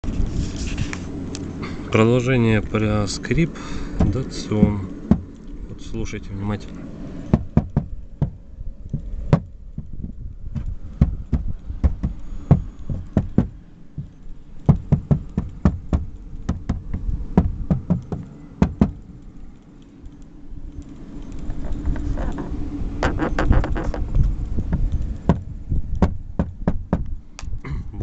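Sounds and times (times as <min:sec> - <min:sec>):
low steady rumble: 0:00.0 - 0:28.0
plastic trim creaking and clicking: 0:08.9 - 0:17.1, 0:20.8 - 0:25.5.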